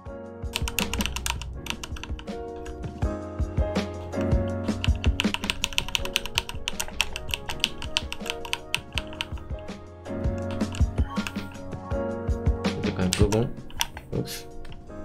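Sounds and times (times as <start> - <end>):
background music: 0.0 - 15.0
typing on computer keyboard: 0.6 - 3.1, 4.1 - 9.6, 10.3 - 11.7, 13.0 - 14.1.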